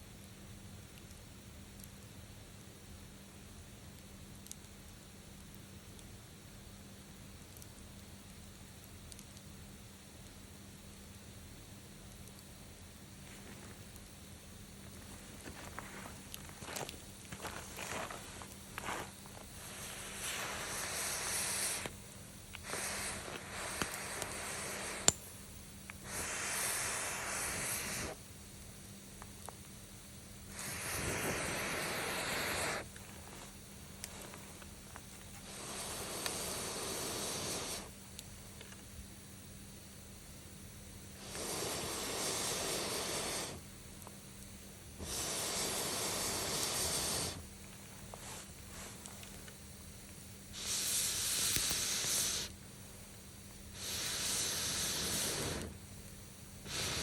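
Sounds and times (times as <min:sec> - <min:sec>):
wood fire hissing: 0:00.0 - 0:57.0
fire popping and ticking: 0:14.8 - 0:38.8, 0:49.0 - 0:56.2
breathy blasts of air: 0:19.6 - 0:22.0, 0:22.6 - 0:25.1, 0:26.0 - 0:28.2, 0:30.5 - 0:32.9, 0:35.4 - 0:37.9, 0:41.2 - 0:43.7, 0:45.0 - 0:47.5, 0:50.5 - 0:52.5, 0:53.7 - 0:55.8, 0:56.6 - 0:57.0.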